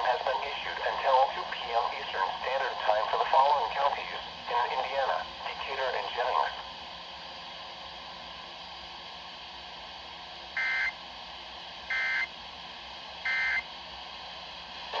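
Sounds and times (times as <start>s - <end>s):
radio hiss: 0.0s - 6.7s
buzzy two-tone data squawks: 10.6s - 10.9s, 11.9s - 12.3s, 13.3s - 13.6s.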